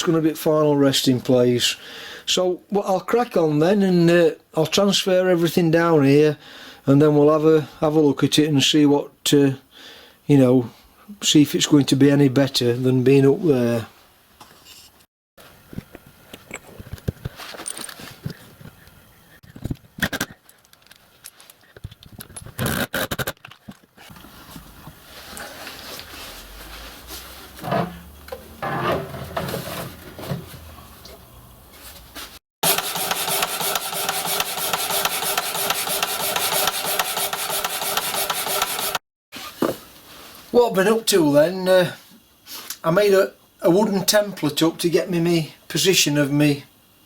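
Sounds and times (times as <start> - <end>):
rubbing and scraping: 24.0 - 39.6
power tool running: 32.6 - 39.0.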